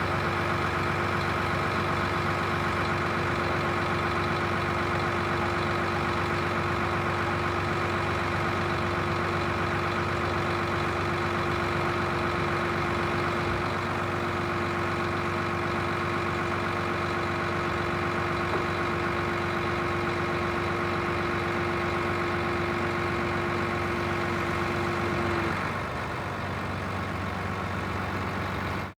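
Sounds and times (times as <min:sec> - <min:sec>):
truck engine idling: 0:00.0 - 0:28.9.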